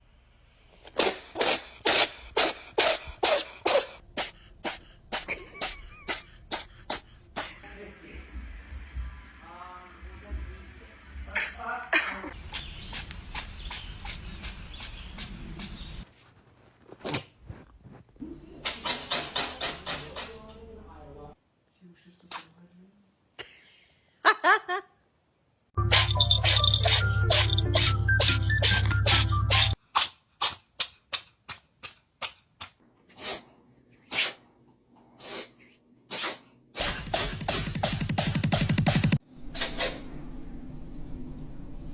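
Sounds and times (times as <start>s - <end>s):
cat sneezing: 0.8s - 7.6s, 22.3s - 22.6s, 31.8s - 34.5s, 35.2s - 37.4s.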